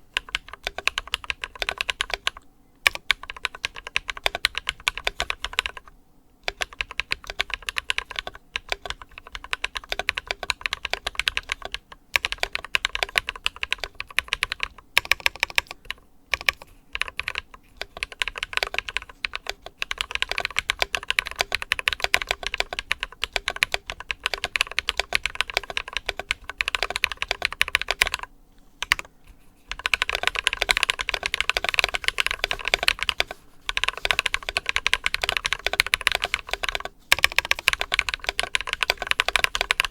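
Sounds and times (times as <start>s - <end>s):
mechanical keyboard typing: 0.0s - 29.1s, 29.7s - 39.9s.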